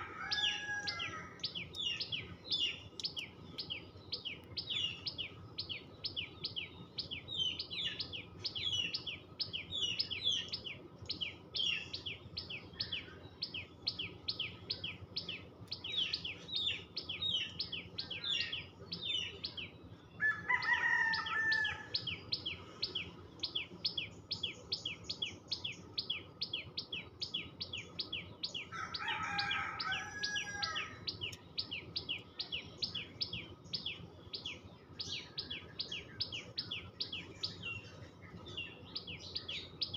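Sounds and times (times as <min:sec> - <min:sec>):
rooster crowing: 0:00.0 - 0:01.4, 0:20.2 - 0:22.0, 0:28.7 - 0:31.1.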